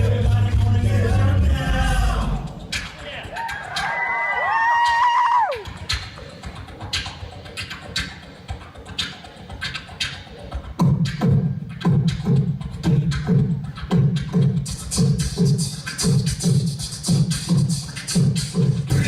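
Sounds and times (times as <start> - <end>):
deep bass voice: 0.0 - 3.4
beatboxed vocal percussion: 0.0 - 19.0.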